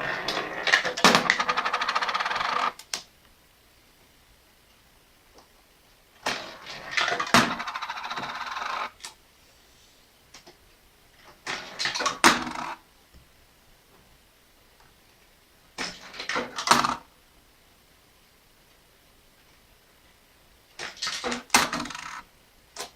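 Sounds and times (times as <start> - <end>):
coins clattering through sorter: 0.0 - 2.8, 6.3 - 8.9, 20.8 - 22.2.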